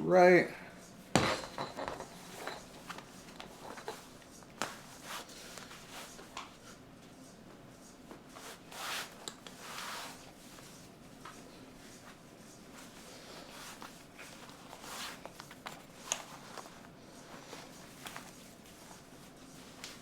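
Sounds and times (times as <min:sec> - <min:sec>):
belt rustling and clicks: 0:13.5 - 0:19.0.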